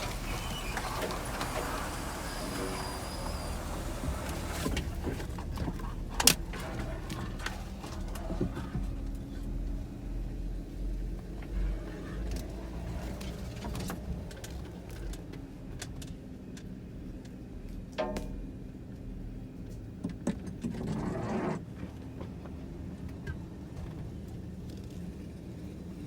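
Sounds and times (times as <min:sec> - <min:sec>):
vehicle engine low rumble: 0:00.0 - 0:26.0
knocks and rattles: 0:18.0 - 0:18.5.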